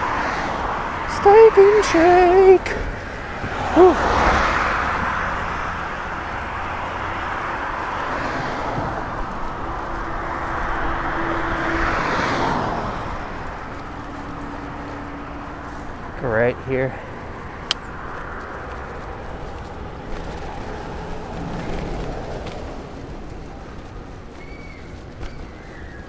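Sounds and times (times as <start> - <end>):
cars passing: 0.0 - 26.0
steady low rumble: 12.5 - 25.9.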